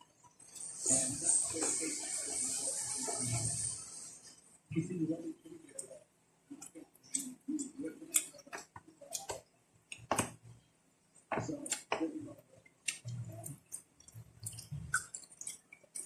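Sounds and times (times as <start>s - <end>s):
chewing and lip smacks: 12.7s - 16.0s.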